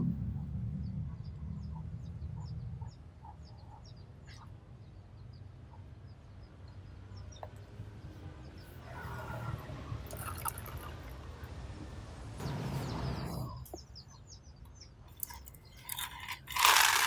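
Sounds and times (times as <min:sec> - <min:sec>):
steady low rumble: 0:00.0 - 0:02.8
small birds chirping: 0:12.4 - 0:16.5.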